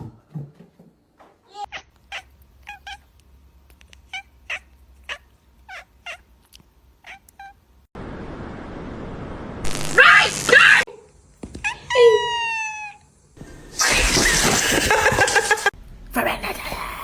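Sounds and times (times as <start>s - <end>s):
cat meowing: 11.6s - 13.0s.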